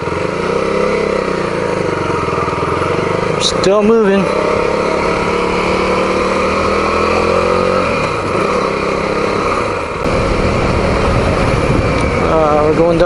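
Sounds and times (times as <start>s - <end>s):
motorcycle engine running: 0.0s - 13.0s
wind noise: 10.0s - 13.0s.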